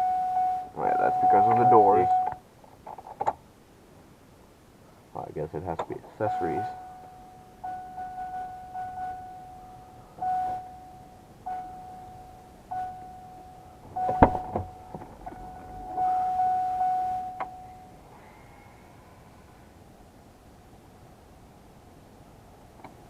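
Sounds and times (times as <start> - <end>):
car warning chime: 0.0 - 2.4, 6.2 - 18.2.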